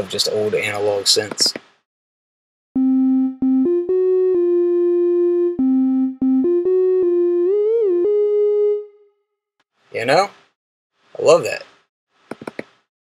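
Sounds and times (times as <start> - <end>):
analog synth lead melody: 2.8 - 9.2.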